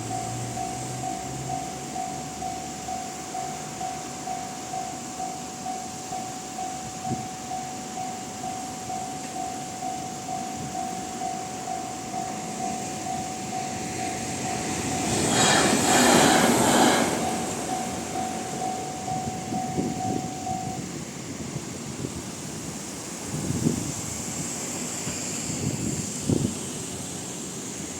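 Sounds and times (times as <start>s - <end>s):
level crossing alarm ringing: 0.0s - 15.2s, 17.1s - 20.9s
train passing: 0.0s - 27.9s.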